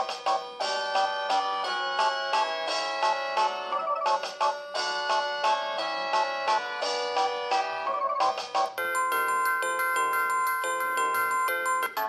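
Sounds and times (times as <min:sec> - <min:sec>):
polyphonic phone ringtone: 0:08.8 - 0:12.0.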